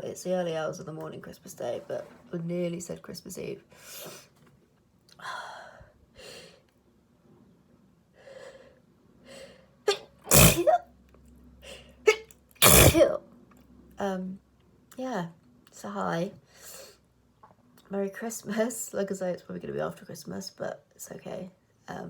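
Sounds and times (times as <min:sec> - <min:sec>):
woman sneezing loudly: 0:09.9 - 0:10.8, 0:12.1 - 0:13.2
breathy catching gasps: 0:10.3 - 0:10.7, 0:12.6 - 0:13.0.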